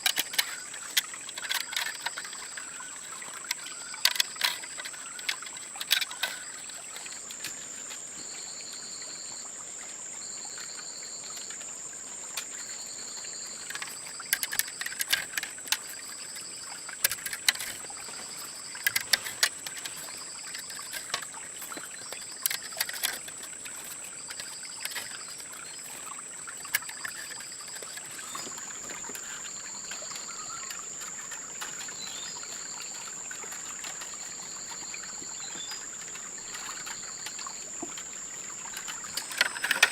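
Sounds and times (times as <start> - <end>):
insect chirping: 0.0 - 39.9
insect high continuous trill: 0.0 - 39.9
sharp clicks and knocks: 13.7 - 16.4, 17.0 - 26.0, 38.7 - 39.9.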